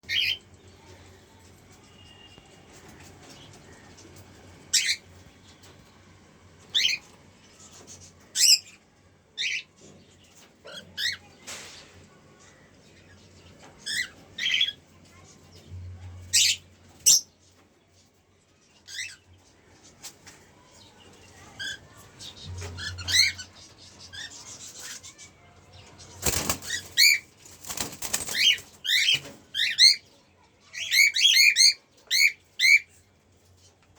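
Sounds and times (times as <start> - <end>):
wings fluttering: 26.0 - 29.4.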